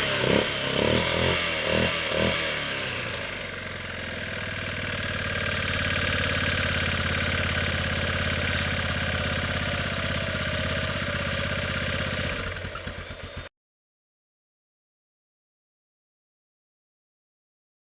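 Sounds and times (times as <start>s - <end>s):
atv engine idling: 0.0s - 13.5s.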